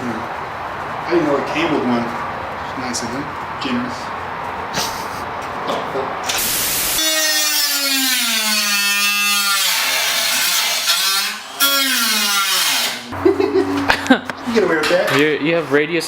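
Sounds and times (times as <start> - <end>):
rotary cutting tool cutting: 6.3 - 13.1.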